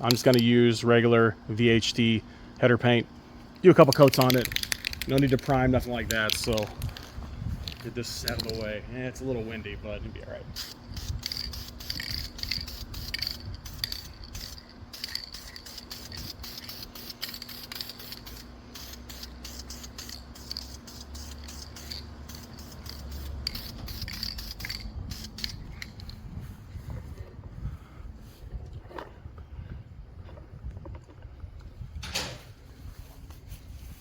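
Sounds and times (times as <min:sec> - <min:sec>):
wind rumbling on microphone: 0:05.0 - 0:14.5, 0:24.8 - 0:34.0
aerosol can spraying: 0:10.6 - 0:26.2.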